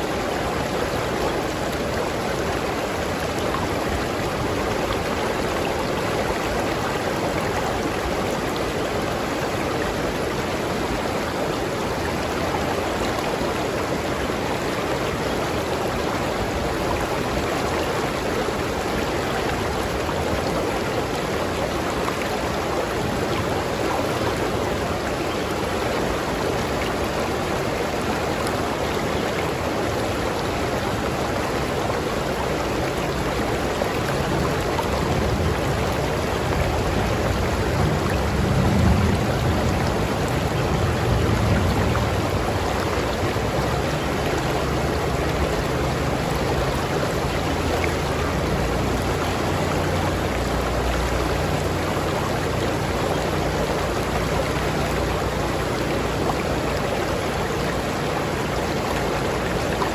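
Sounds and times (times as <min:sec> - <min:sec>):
river water flowing over rocks: 0:00.0 - 0:59.9.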